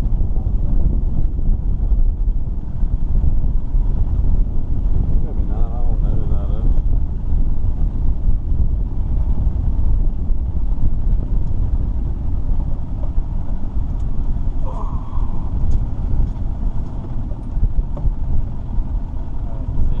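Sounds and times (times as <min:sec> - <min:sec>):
boat motor rumbling: 0:00.0 - 0:20.0.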